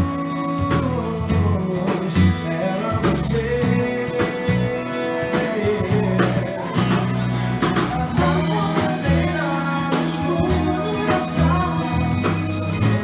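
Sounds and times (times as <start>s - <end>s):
bass notes: 0.0s - 13.0s
guitar: 0.0s - 13.0s
person singing: 0.0s - 13.0s.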